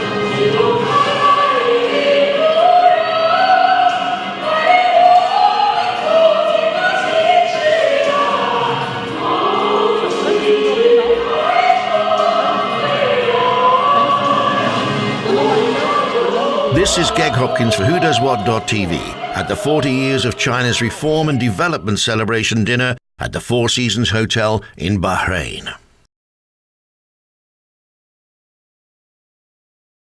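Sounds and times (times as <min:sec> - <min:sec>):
choir singing slow melody: 0:00.0 - 0:21.6.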